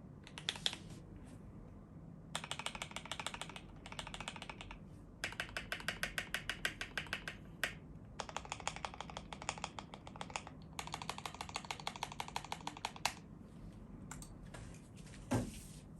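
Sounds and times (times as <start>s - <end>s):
mechanical keyboard typing: 0.2s - 0.8s, 2.3s - 13.2s.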